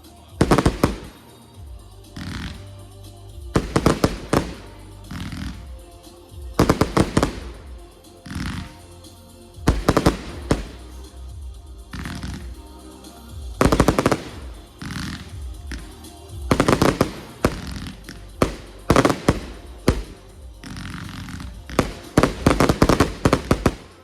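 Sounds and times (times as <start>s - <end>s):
music playing: 0.0s - 24.0s
fireworks sharp bangs: 0.4s - 1.3s, 3.6s - 5.7s, 6.6s - 7.8s, 9.7s - 11.0s, 13.6s - 15.3s, 16.5s - 24.0s.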